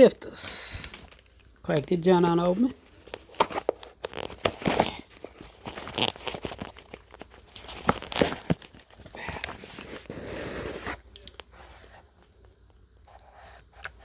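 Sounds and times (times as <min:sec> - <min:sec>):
packaging rustling and tearing: 0:00.7 - 0:01.6, 0:02.5 - 0:11.9.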